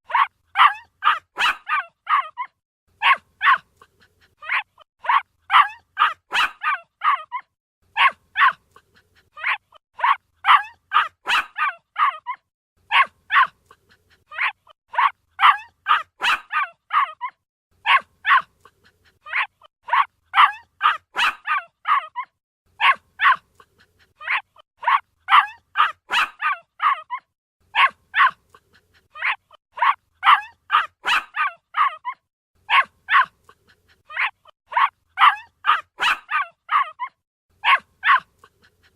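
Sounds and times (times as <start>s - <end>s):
puppy yipping: 0.0s - 38.9s.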